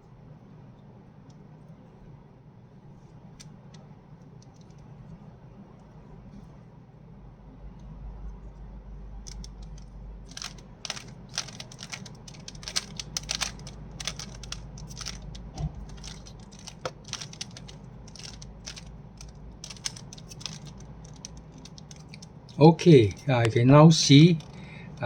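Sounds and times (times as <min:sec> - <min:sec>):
puzzle cube clicking as turned: 0:09.3 - 0:22.3, 0:24.4 - 0:24.6.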